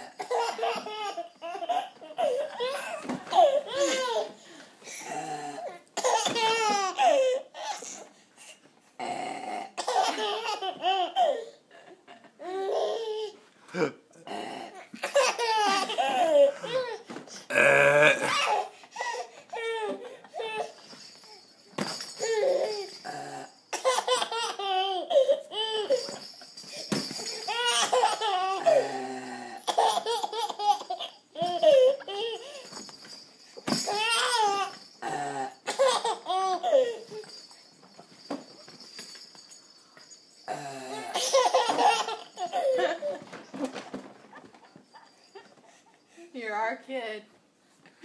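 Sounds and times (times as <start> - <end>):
baby laughing: 0.0 - 4.4, 6.0 - 8.0, 9.8 - 11.6, 15.0 - 17.0, 23.7 - 26.1, 27.5 - 28.9, 29.6 - 32.6, 35.7 - 37.1, 41.0 - 45.5.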